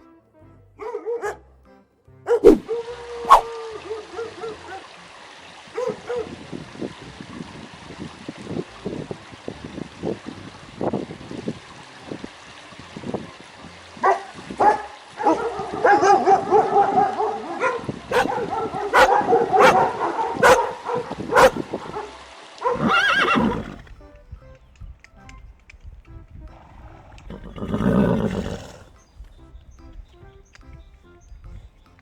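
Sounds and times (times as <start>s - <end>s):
horse whinnying: 22.7s - 24.0s, 26.6s - 29.0s.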